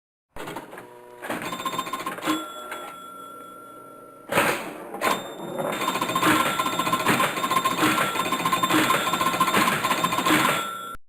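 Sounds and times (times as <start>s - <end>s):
pinball machine clicks and rattles: 0.4s - 3.2s, 4.3s - 11.0s
ringing tones: 1.4s - 4.3s, 5.0s - 11.0s.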